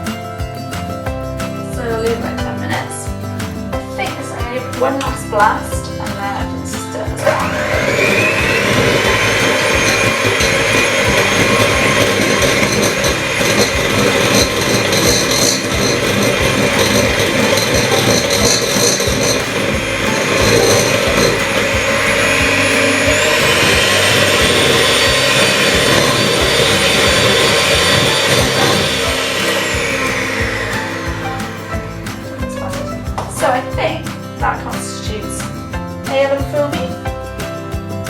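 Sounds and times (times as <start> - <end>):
electric mixer whining: 7.2 - 33.6.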